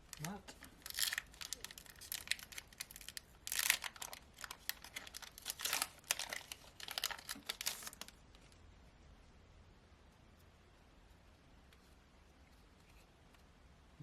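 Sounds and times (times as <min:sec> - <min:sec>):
foil wrapper crinkling and tearing: 0:00.0 - 0:08.5.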